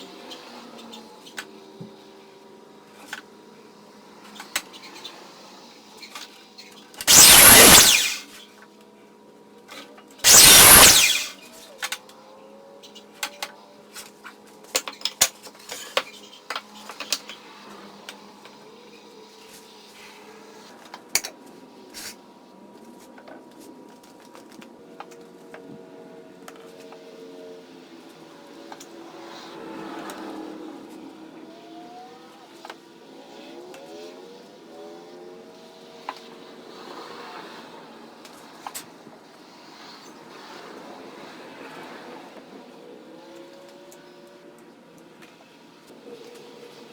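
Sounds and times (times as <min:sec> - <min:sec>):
loud power tool bursts: 0:07.1 - 0:08.3, 0:10.3 - 0:11.4.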